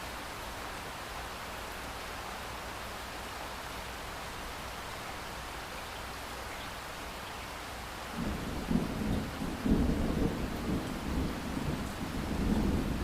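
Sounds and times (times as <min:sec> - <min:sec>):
rain hiss: 0:00.0 - 0:13.0
thunder rumbling: 0:08.2 - 0:13.0.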